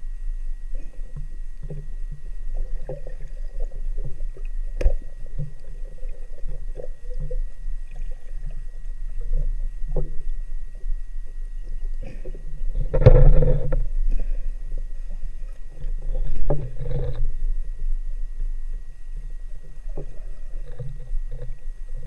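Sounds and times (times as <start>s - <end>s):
muffled underwater rumble: 0.0s - 22.0s
water gurgles: 0.6s - 14.4s.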